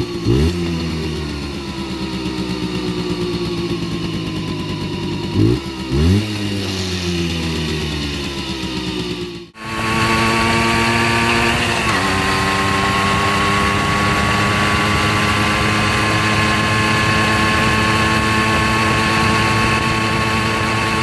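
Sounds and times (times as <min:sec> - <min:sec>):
moped engine idling: 0:00.0 - 0:09.6.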